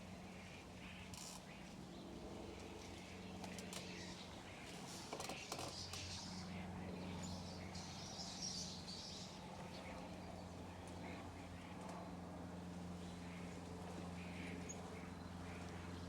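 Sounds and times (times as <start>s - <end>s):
steady low hum: 0.0s - 16.0s
small birds chirping: 3.0s - 11.8s.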